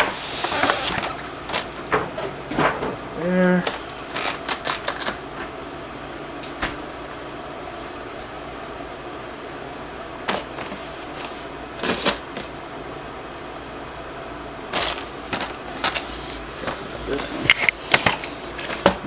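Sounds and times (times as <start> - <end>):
packaging rustling and scraping: 0.0 - 3.0, 3.6 - 5.2, 10.3 - 12.5, 14.8 - 19.0.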